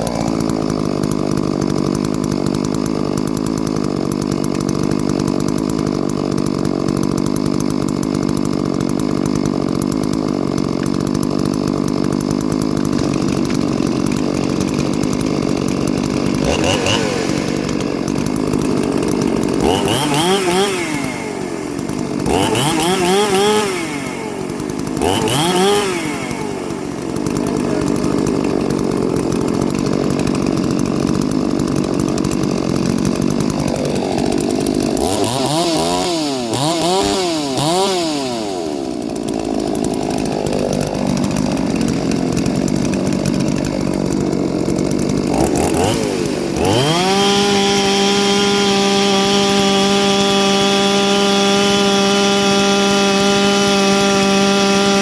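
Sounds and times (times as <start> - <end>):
chainsaw revving and cutting: 0.0 - 55.0.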